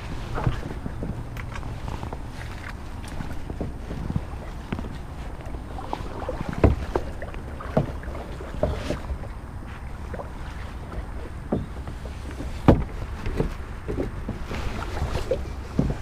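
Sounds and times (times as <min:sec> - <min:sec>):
wind rumble on microphone: 0:00.0 - 0:16.0
paddle knocks against hull: 0:00.3 - 0:16.0.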